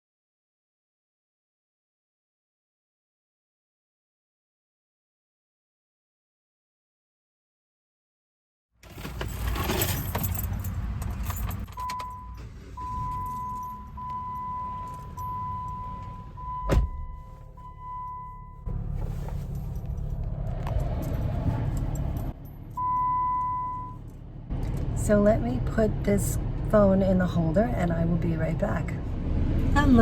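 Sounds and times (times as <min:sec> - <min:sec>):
rustling inside a car: 0:08.8 - 0:24.2
keys jangling: 0:09.0 - 0:12.2, 0:19.3 - 0:22.9
car warning chime beeps: 0:11.7 - 0:18.8, 0:22.7 - 0:24.2.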